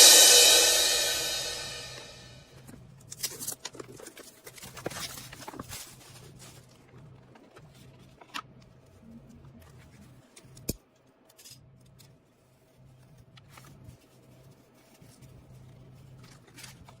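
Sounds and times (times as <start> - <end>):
packaging rustling and scratching: 3.0 - 10.6, 12.3 - 17.0.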